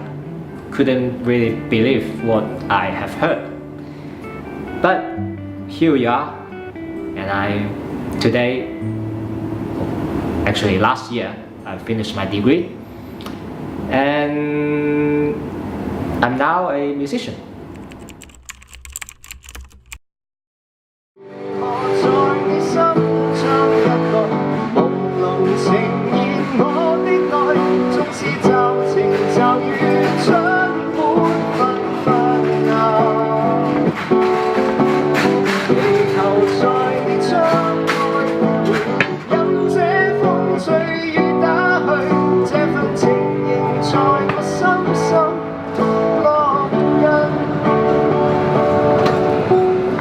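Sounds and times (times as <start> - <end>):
guitar: 0.0 - 18.4, 21.2 - 50.0
person singing: 21.2 - 48.9.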